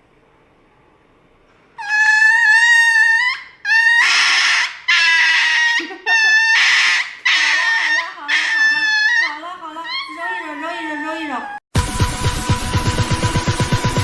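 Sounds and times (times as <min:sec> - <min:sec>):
dog wailing in pain: 0:01.8 - 0:11.7.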